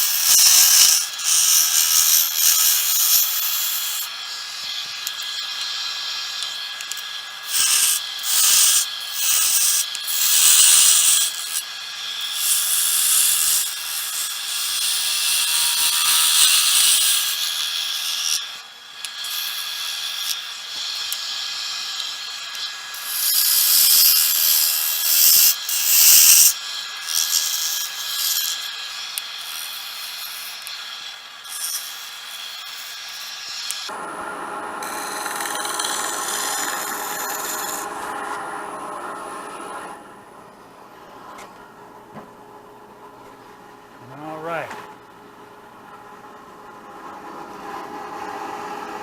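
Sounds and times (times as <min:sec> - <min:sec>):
gouge cutting wood on a lathe: 0:00.0 - 0:34.0, 0:34.7 - 0:39.7.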